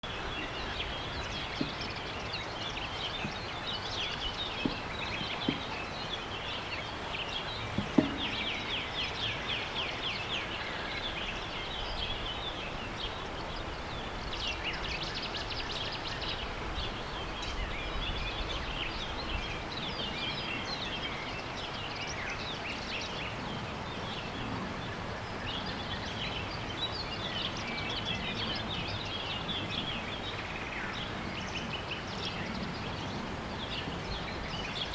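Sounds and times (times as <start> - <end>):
birds chirping and trilling: 0.0 - 34.9
steady background noise: 0.0 - 34.9.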